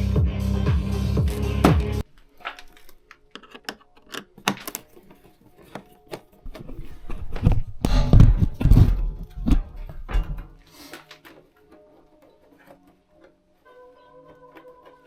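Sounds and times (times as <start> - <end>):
heavy thumps and knocks: 7.4 - 10.6.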